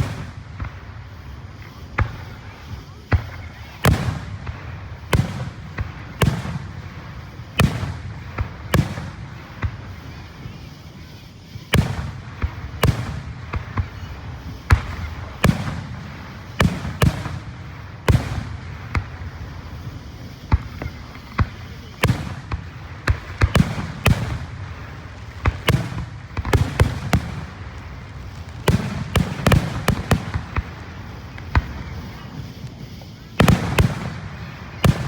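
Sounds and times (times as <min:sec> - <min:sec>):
fireworks banging: 0:00.0 - 0:35.0.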